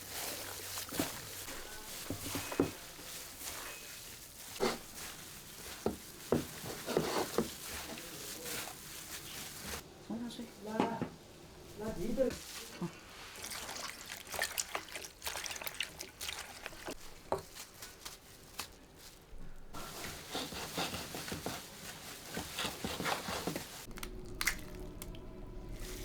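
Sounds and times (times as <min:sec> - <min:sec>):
wet squishing: 0:00.0 - 0:09.8, 0:12.4 - 0:19.1, 0:23.5 - 0:25.2
liquid pouring and dripping: 0:13.2 - 0:17.0, 0:23.9 - 0:25.2.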